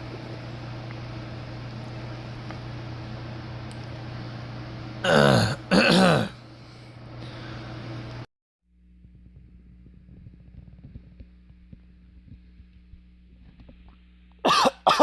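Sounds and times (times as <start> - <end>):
low electrical hum: 0.0 - 15.0
person coughing: 5.0 - 6.4, 14.5 - 15.0.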